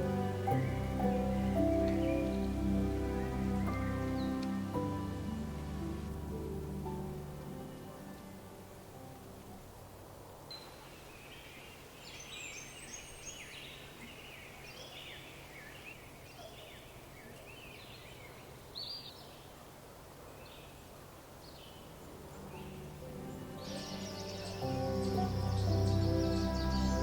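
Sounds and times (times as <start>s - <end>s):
birds chirping: 0.0s - 8.5s, 10.5s - 27.0s
soft steady hiss: 0.0s - 27.0s.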